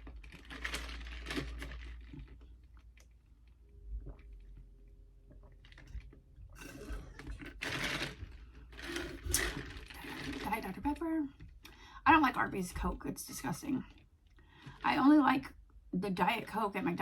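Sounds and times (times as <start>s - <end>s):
person chewing: 6.5s - 10.1s.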